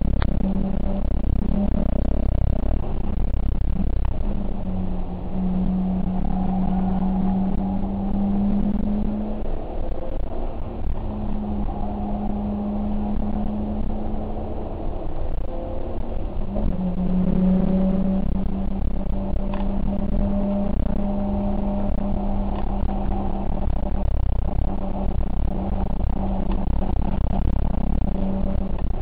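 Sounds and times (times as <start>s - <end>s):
vehicle engine droning: 0.0s - 29.0s.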